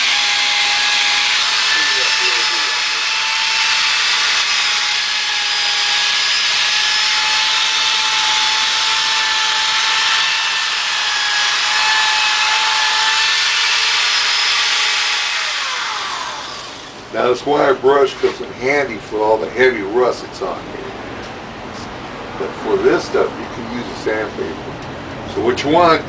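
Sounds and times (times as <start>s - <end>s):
wire brush scrubbing metal: 0.0s - 5.2s
electric drill motor whine: 0.0s - 17.1s.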